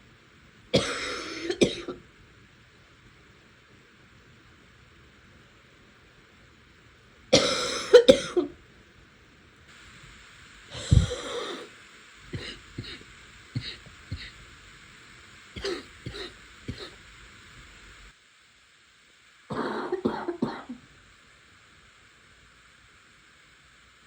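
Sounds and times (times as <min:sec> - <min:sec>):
person coughing: 0:00.8 - 0:02.0, 0:07.4 - 0:08.5, 0:10.8 - 0:11.7, 0:12.4 - 0:14.4, 0:15.6 - 0:17.0, 0:19.5 - 0:20.8
person clearing throat: 0:12.4 - 0:13.0, 0:13.6 - 0:14.4, 0:15.6 - 0:17.0, 0:19.5 - 0:20.8.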